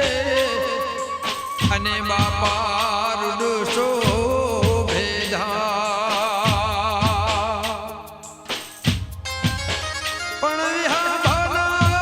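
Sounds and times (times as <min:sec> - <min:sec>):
wavering melodic accompaniment: 0:00.0 - 0:04.6, 0:08.0 - 0:12.0
person singing devotional song: 0:00.0 - 0:08.8, 0:10.3 - 0:12.0
percussion strokes: 0:00.0 - 0:12.0.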